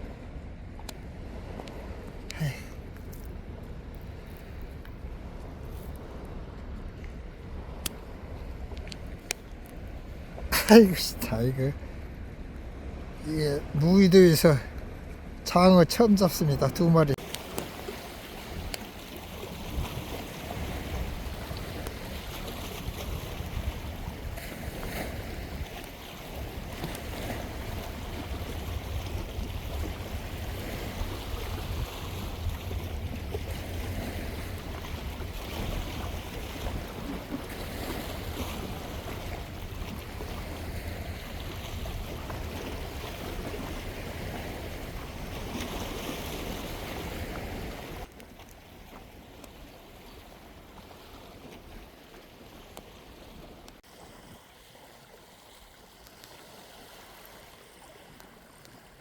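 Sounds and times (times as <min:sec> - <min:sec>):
sea waves washing: 0:01.0 - 0:59.0
wind buffeting microphone: 0:18.4 - 0:45.6.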